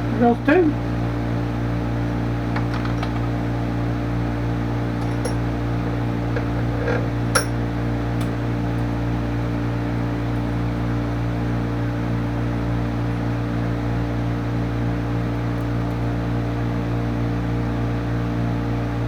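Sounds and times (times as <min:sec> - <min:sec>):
light metallic clinks: 0:05.0 - 0:05.6, 0:06.4 - 0:07.6.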